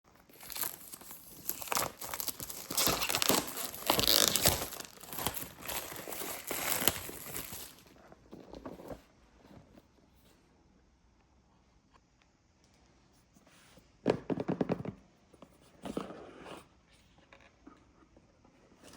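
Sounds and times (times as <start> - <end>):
packaging crumpled and torn: 0.1 - 8.0.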